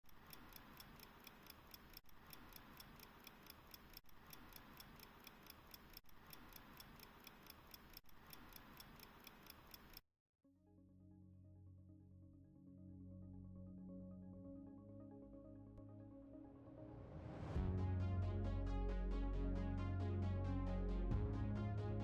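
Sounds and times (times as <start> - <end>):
pocket watch ticking: 0.0 - 10.0.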